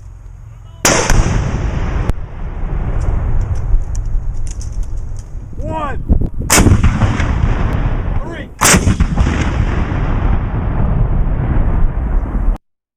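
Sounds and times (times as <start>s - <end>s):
low rolling rumble: 0.0s - 12.6s
anti-aircraft gun firing: 0.8s - 2.2s, 6.5s - 11.7s.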